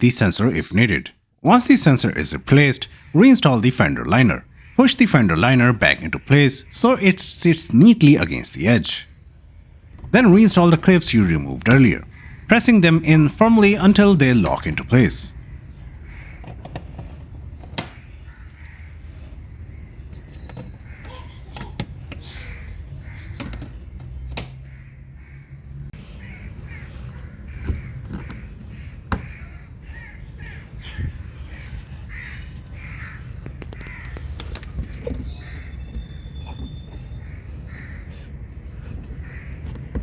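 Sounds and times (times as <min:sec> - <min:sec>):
bird calling: 0:22.2 - 0:40.0.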